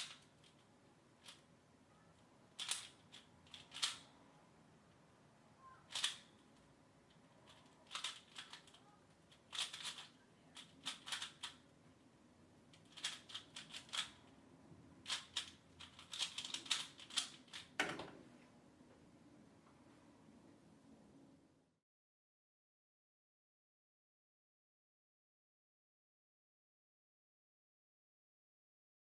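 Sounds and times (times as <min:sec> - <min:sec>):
puzzle cube plastic clicks: 0:00.0 - 0:01.5, 0:02.2 - 0:04.1, 0:05.9 - 0:11.6, 0:12.7 - 0:14.2, 0:15.0 - 0:17.8.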